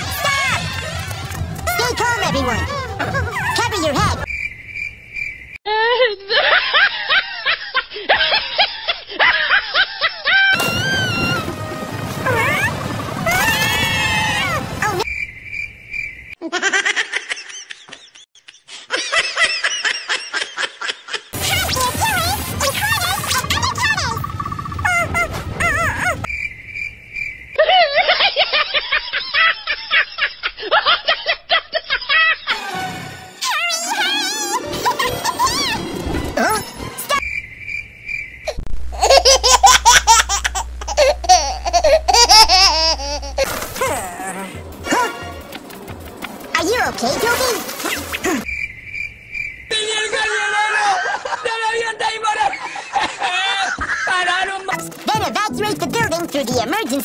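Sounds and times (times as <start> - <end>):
cartoonish giggling laughter: 5.7 - 10.6, 16.4 - 21.4, 27.6 - 32.6, 34.0 - 35.9, 38.5 - 46.4, 52.4 - 54.3.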